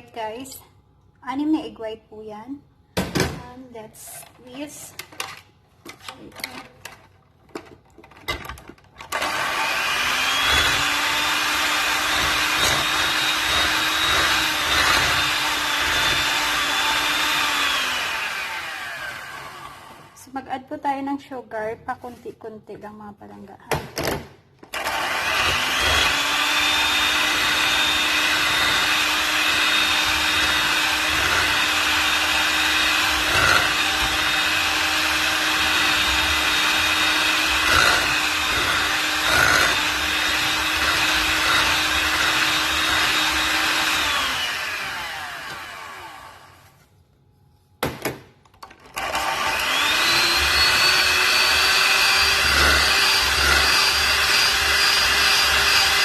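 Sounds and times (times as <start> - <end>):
electric mixer whining: 9.0 - 20.2, 24.7 - 46.7, 48.9 - 56.0.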